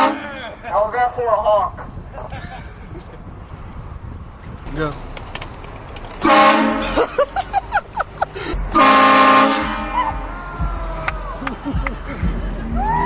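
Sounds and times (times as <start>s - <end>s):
train horn blasts: 0.0s - 0.3s, 6.2s - 6.9s, 8.7s - 10.4s.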